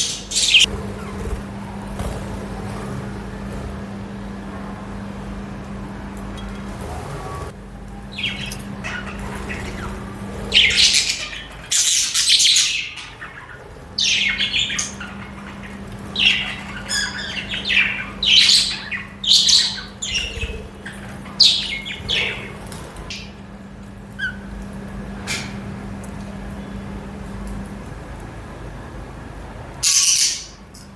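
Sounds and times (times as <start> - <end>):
budgerigars chirping and squawking: 0.0 - 2.2, 8.1 - 23.3, 24.1 - 24.5, 29.8 - 30.6.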